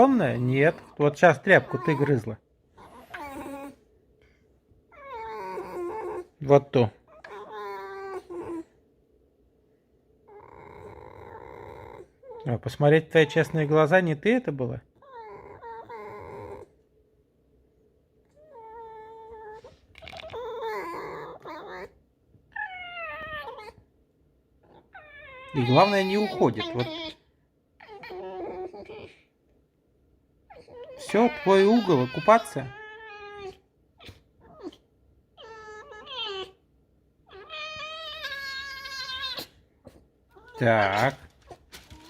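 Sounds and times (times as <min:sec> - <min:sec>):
fox whining and screeching: 0:00.0 - 0:03.8, 0:04.9 - 0:06.3, 0:07.1 - 0:08.7, 0:15.0 - 0:16.6, 0:18.4 - 0:23.8, 0:24.6 - 0:27.2, 0:27.8 - 0:29.2, 0:30.5 - 0:34.8, 0:35.4 - 0:36.6, 0:37.3 - 0:42.0.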